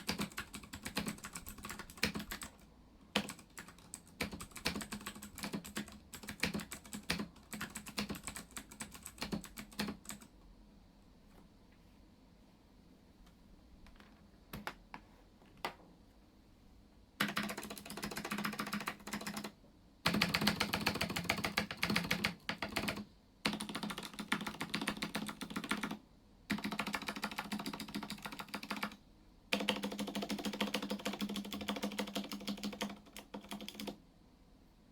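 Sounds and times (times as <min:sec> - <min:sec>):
clicky mechanical keyboard typing: 0:00.0 - 0:10.3, 0:17.2 - 0:34.0.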